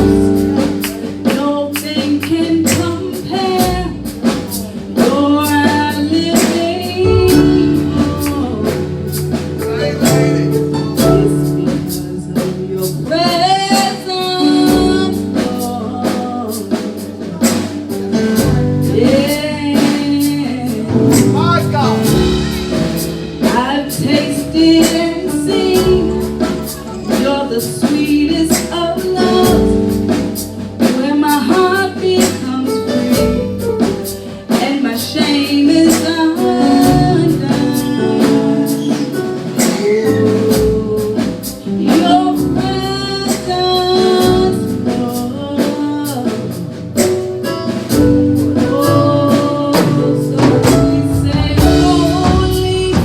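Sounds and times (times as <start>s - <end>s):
steady percussive beat: 0.0s - 53.0s
voices singing over a band: 18.9s - 30.1s.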